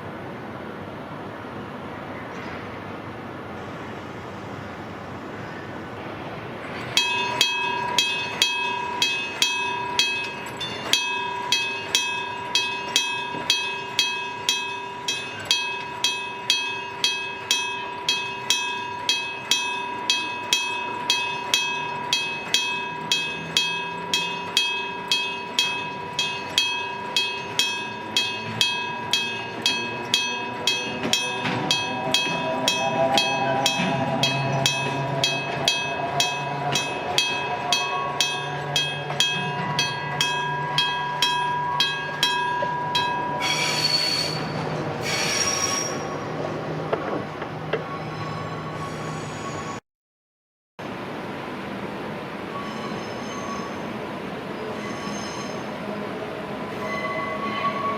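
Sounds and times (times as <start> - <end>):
approaching train whine: 0.0 - 49.8, 50.8 - 57.9
level-crossing bell ringing: 6.8 - 45.0.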